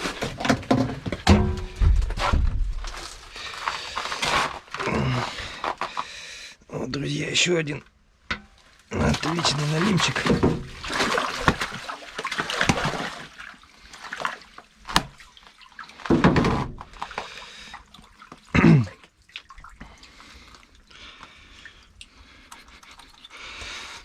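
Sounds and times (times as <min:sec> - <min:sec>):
clicks and knocks: 0:00.4 - 0:02.6
water splashing and dripping: 0:08.3 - 0:24.0.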